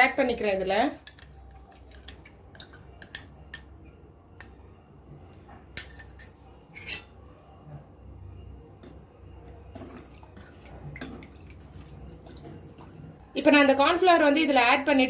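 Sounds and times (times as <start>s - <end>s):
utensil clinking against pot: 5.8s - 7.1s.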